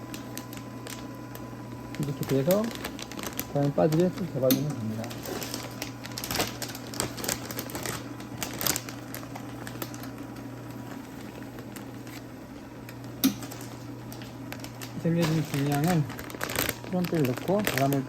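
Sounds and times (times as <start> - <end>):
plastic bags crinkling: 0.0 - 18.0.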